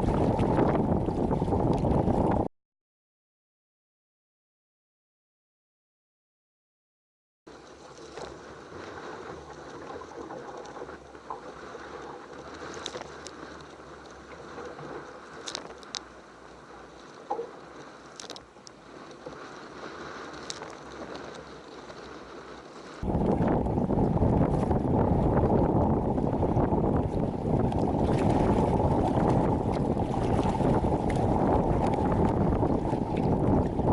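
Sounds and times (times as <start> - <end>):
light ticks and splashes: 0.0 - 2.0, 7.5 - 23.7, 27.0 - 33.9
water and wind rushing: 0.0 - 2.5, 7.5 - 33.9.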